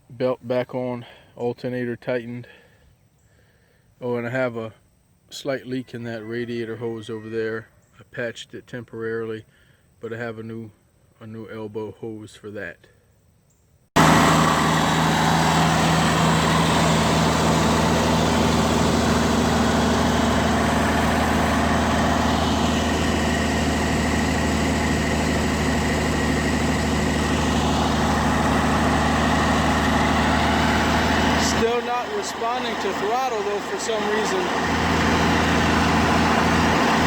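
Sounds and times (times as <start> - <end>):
diesel tractor engine running: 14.0 - 37.0.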